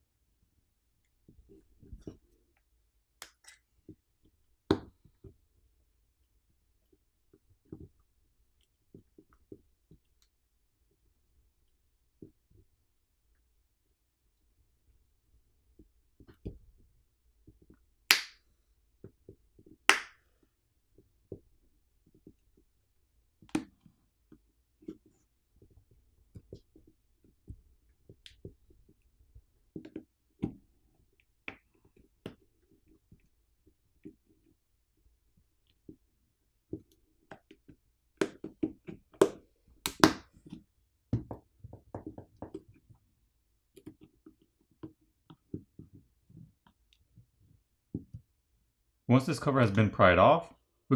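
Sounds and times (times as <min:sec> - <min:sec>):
tool clicks and taps: 0:39.2 - 0:40.2.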